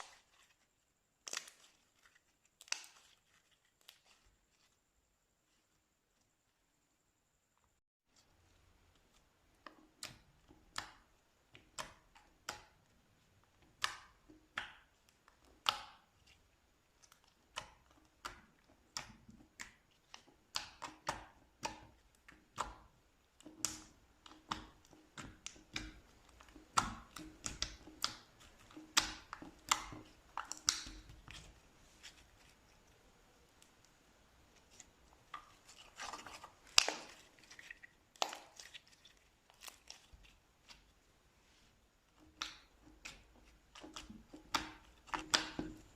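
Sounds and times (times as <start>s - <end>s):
slime clicking and popping: 13.6s - 16.2s, 17.0s - 31.5s, 42.2s - 45.9s.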